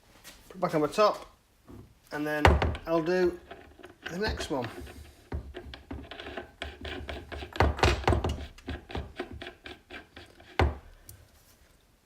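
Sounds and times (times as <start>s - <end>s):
metallic clicks and knocks: 2.4s - 10.8s.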